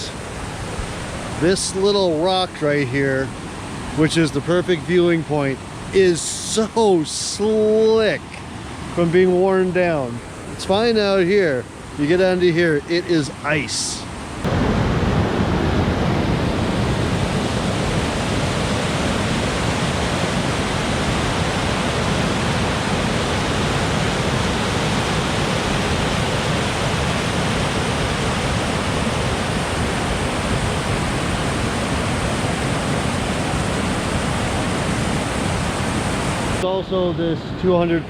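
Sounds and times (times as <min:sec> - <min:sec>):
waterfall rushing over rock: 0:14.4 - 0:36.6.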